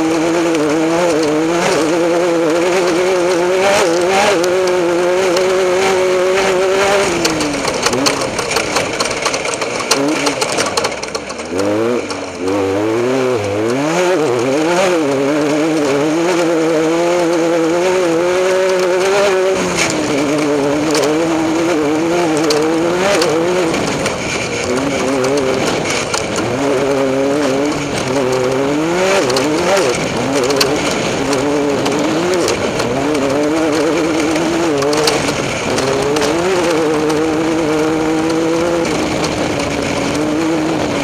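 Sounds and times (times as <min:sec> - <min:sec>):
race vehicle engine revving: 0:00.0 - 0:41.0
sharp knocks and clatter: 0:00.0 - 0:41.0.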